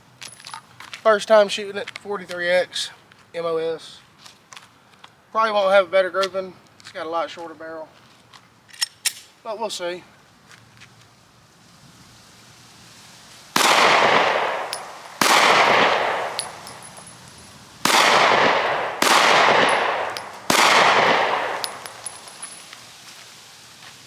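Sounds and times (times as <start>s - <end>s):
pistol shots with echo: 13.6s - 22.6s.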